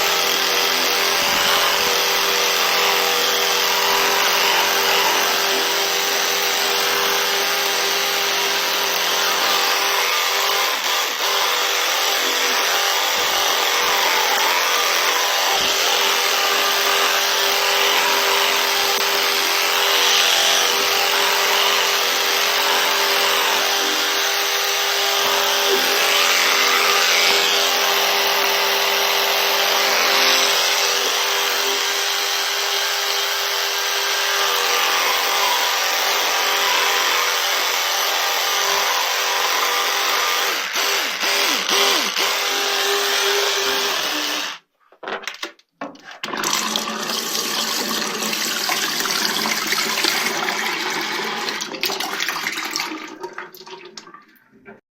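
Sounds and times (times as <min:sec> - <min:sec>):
small electric motor with air rush: 0:00.0 - 0:31.9.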